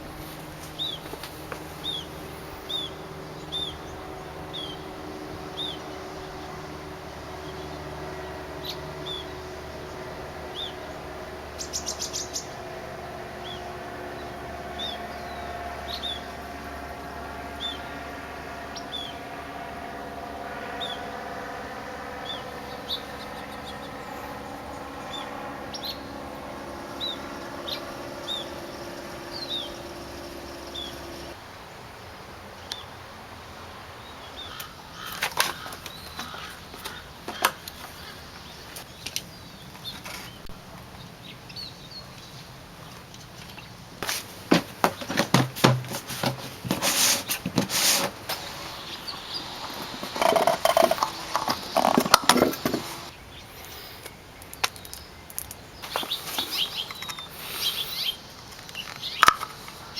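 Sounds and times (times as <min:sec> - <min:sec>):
mechanical hum: 0:00.0 - 0:31.5
small bird chirping: 0:00.3 - 0:04.9, 0:08.6 - 0:10.8, 0:14.2 - 0:16.4, 0:22.2 - 0:31.4, 0:48.4 - 0:59.9
sharp clicks and knocks: 0:49.7 - 0:53.0.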